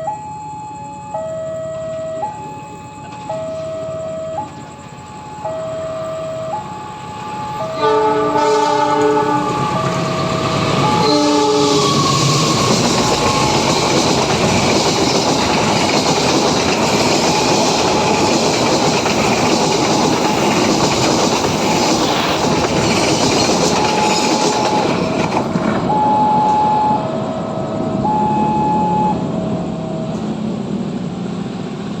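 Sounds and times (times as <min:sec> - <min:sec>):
two-tone level crossing alarm: 0:00.0 - 0:21.6, 0:22.9 - 0:29.6
train wheels clattering on rails: 0:06.5 - 0:26.7, 0:30.0 - 0:32.0
train horn blasts: 0:07.6 - 0:10.2, 0:10.8 - 0:12.1.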